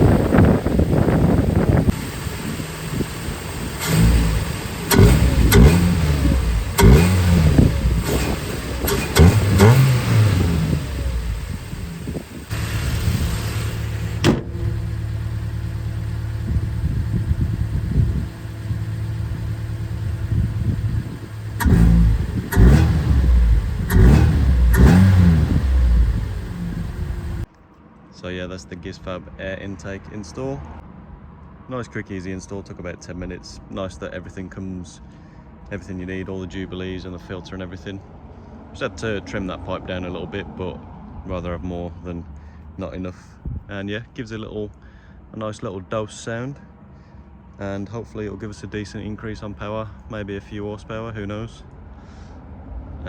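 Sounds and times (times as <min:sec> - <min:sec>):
car engine revving: 0:00.0 - 0:27.5.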